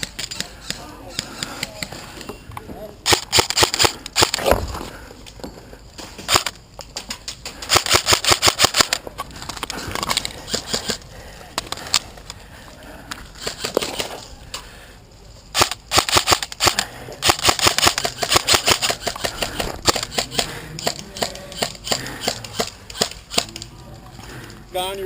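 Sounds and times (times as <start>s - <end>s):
airsoft rifles firing: 3.0s - 4.5s, 6.3s - 6.6s, 7.6s - 9.0s, 15.5s - 23.6s.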